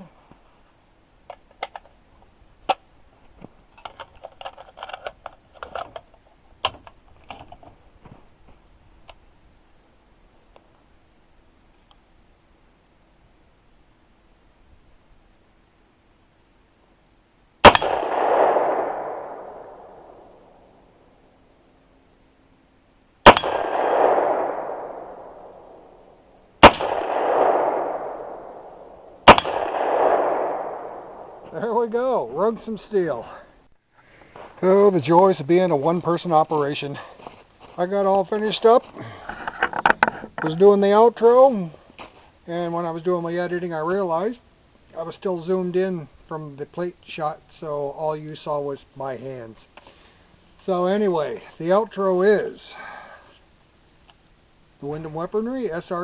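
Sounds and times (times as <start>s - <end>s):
rifle magazine clicks and rattles: 3.8s - 7.6s
rolling echo of gunshots: 17.6s - 20.3s, 23.3s - 25.9s, 26.6s - 31.5s
rifle shots: 17.6s - 20.6s, 23.2s - 26.0s, 26.6s - 31.5s.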